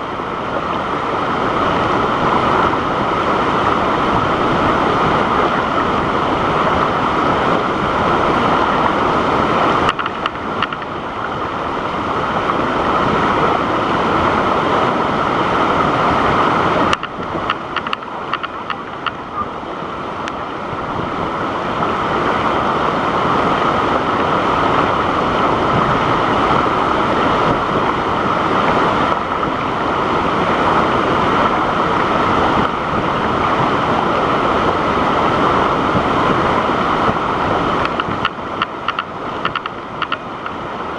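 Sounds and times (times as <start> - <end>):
waterfall rushing: 0.0 - 40.9
faint clicks: 9.9 - 10.9, 16.9 - 19.2, 37.8 - 40.5.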